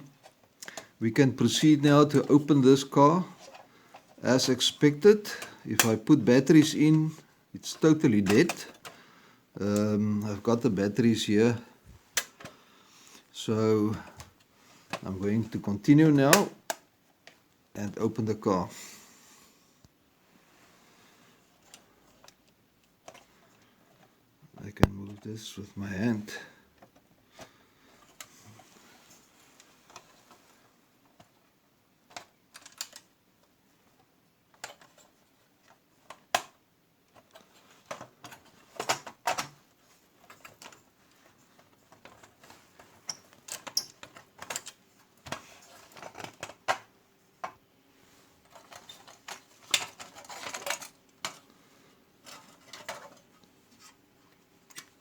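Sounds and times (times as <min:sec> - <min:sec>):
toy car metal clicks and scrapes: 0:48.5 - 0:51.4.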